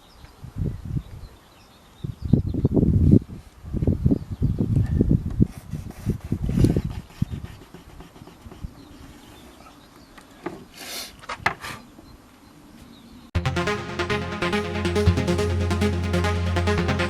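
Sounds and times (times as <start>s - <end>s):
rubbing strokes on wood: 5.5s - 9.4s.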